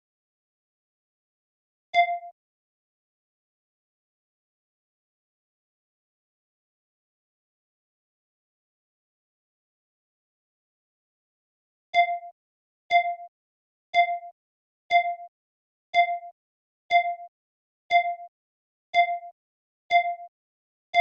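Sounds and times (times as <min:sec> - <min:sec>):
electronic timer beeps: 0:02.0 - 0:02.4, 0:12.0 - 0:12.3, 0:12.9 - 0:13.3, 0:14.0 - 0:14.3, 0:14.9 - 0:15.3, 0:16.0 - 0:16.3, 0:16.9 - 0:17.3, 0:17.9 - 0:18.3, 0:19.0 - 0:19.3, 0:19.9 - 0:20.3.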